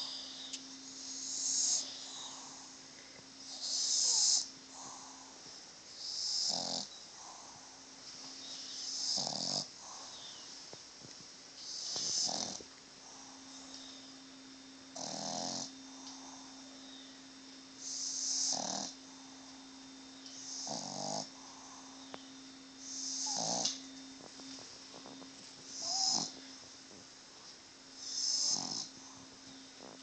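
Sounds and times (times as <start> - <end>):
dog snoring loudly: 1.0 - 2.8, 3.5 - 5.4, 6.0 - 7.7, 8.8 - 10.2, 11.7 - 13.4, 14.9 - 16.6, 17.8 - 19.3, 20.4 - 21.9, 22.8 - 23.8, 24.9 - 26.4, 28.0 - 29.2, 29.8 - 30.0.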